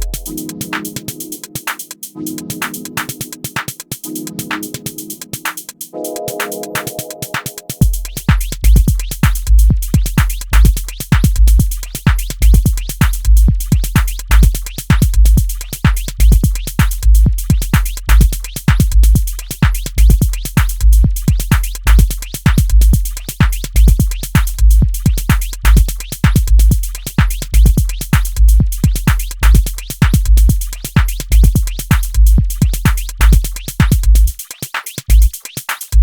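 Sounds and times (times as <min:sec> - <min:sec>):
pulsing deep sub-bass: 0:00.0 - 0:00.4, 0:07.8 - 0:19.4, 0:20.0 - 0:26.9, 0:27.5 - 0:30.7, 0:31.3 - 0:34.3
clicky electronic percussion: 0:00.0 - 0:09.4.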